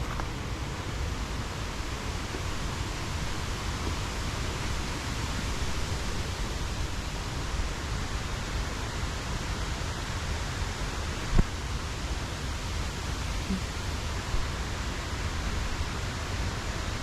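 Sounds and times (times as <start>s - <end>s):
river water rushing: 0.0s - 7.2s.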